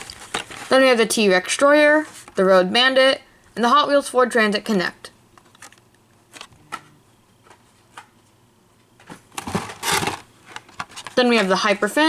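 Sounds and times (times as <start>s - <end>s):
packaging rustling: 9.3s - 11.6s.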